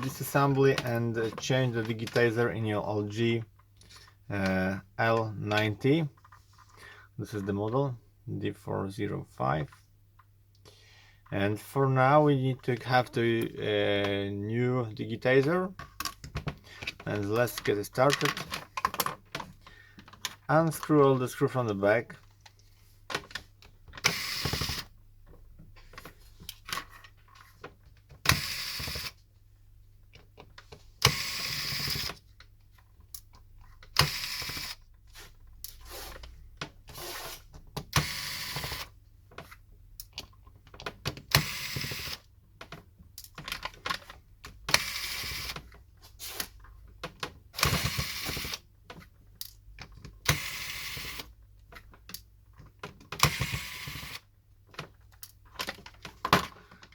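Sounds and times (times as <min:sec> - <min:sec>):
screwdriver scratching: 0:36.9 - 0:37.5.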